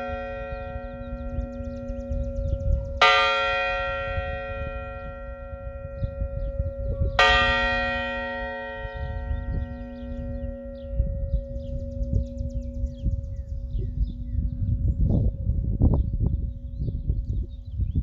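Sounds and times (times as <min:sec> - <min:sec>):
church bell tolling: 0:00.0 - 0:17.1
low rumble: 0:00.0 - 0:18.0.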